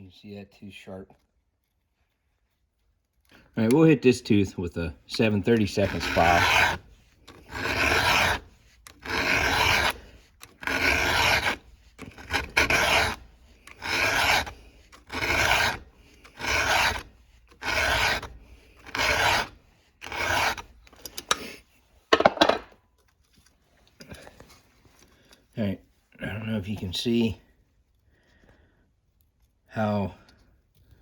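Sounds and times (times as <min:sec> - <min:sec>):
file rasping on chain tooth: 0:04.9 - 0:21.6.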